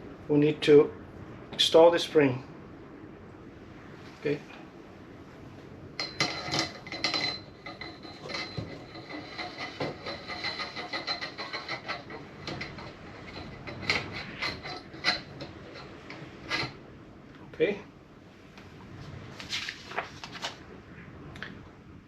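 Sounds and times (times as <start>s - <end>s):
coil spring clinking and scraping: 6.0s - 16.8s.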